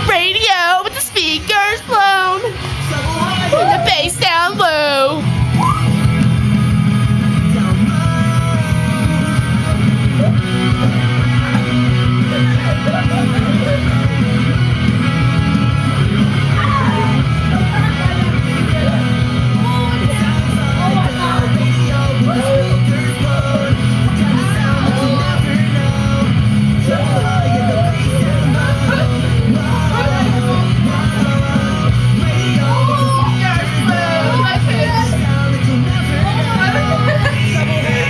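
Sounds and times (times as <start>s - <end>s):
pop-rock song with singing: 0.0s - 38.0s.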